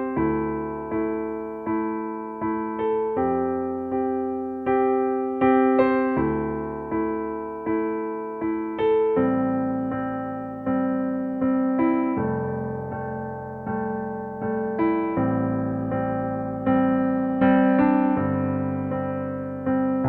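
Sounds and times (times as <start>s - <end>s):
slow gentle piano music: 0.0s - 20.0s.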